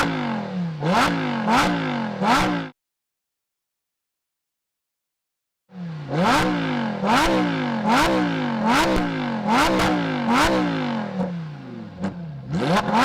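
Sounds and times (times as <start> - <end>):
car engine revving: 0.0 - 2.7, 5.7 - 13.0.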